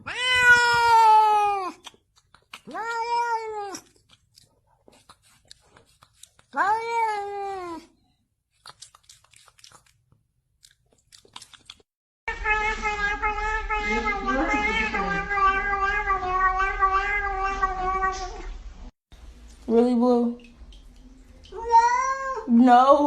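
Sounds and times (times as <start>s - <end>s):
cat meowing: 0.0s - 1.8s, 2.7s - 3.9s, 12.3s - 18.6s, 21.5s - 22.5s.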